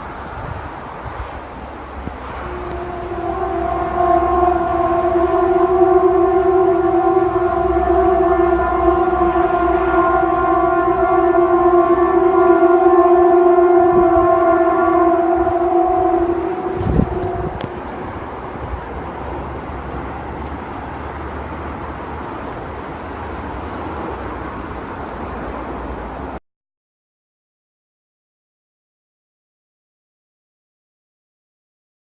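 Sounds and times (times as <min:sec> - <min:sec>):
loud horn-like drone: 0:02.0 - 0:25.0.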